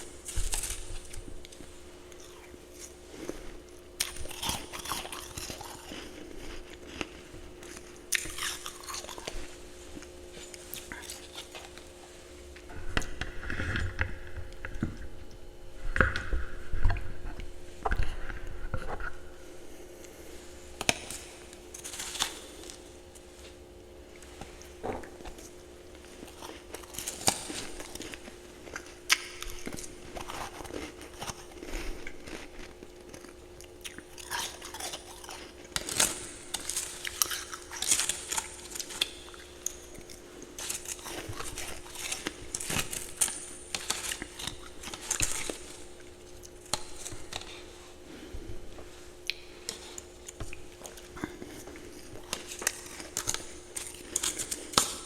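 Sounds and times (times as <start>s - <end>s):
chewing ice crunches: 0.0s - 11.9s, 20.8s - 23.0s, 24.2s - 47.7s, 49.2s - 55.0s.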